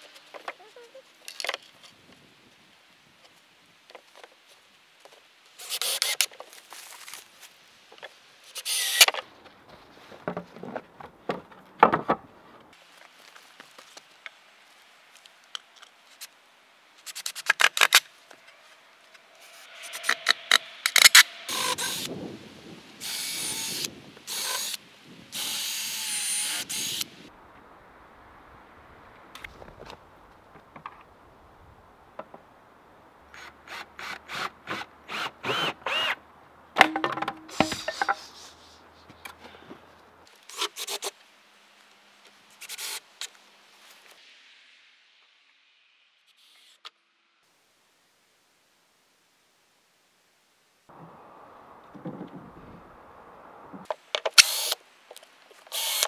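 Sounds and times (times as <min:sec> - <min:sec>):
power drill driving screws: 0:05.6 - 0:06.3, 0:08.6 - 0:09.1, 0:21.0 - 0:22.1, 0:23.0 - 0:24.8, 0:25.4 - 0:27.1, 0:54.4 - 0:54.8, 0:55.7 - 0:56.0
boards knocking: 0:10.3 - 0:12.2, 0:36.8 - 0:38.2.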